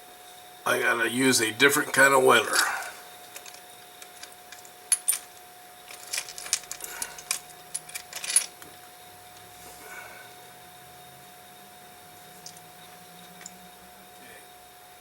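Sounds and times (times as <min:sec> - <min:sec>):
faint steady hum: 0:00.0 - 0:15.0
small metal tools clicking: 0:02.5 - 0:09.5, 0:12.3 - 0:13.6.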